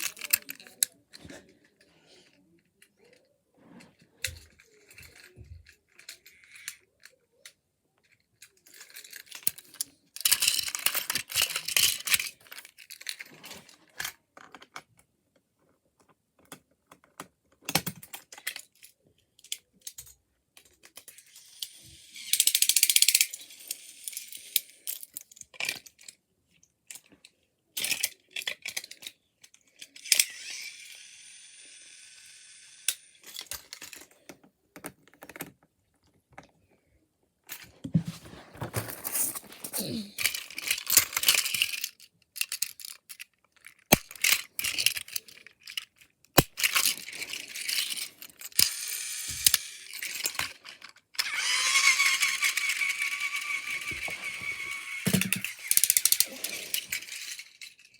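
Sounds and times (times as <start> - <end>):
plastic toy clicks and rattles: 0.0 - 3.3, 4.2 - 15.0, 16.4 - 27.2, 27.8 - 35.6, 38.2 - 57.9
packaging rustling: 38.0 - 40.3.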